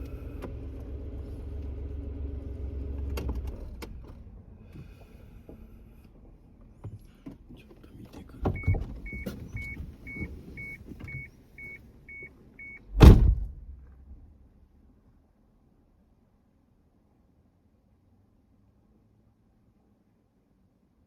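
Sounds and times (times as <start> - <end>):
vehicle warning beeps: 8.4 - 13.0
door thump shutting: 12.9 - 13.8.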